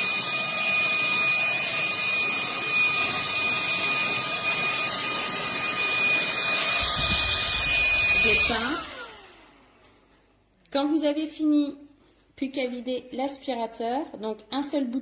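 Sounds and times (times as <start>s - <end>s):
handheld vacuum running: 0.0s - 10.2s.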